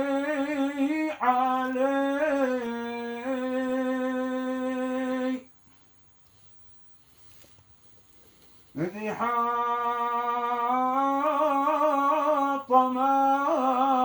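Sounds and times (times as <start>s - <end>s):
man singing solo: 8.8s - 14.0s.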